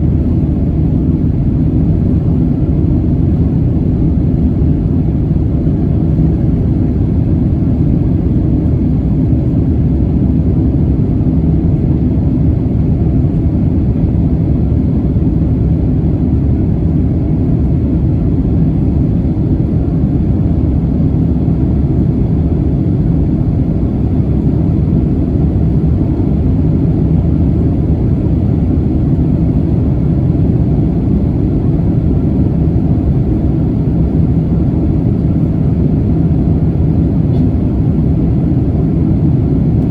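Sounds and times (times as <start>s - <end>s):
jet engines and airflow rumble: 0.0s - 39.9s.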